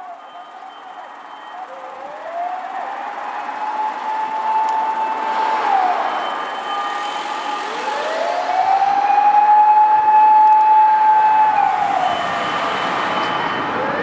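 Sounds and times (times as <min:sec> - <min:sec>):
fire truck siren wailing: 0:00.0 - 0:14.0.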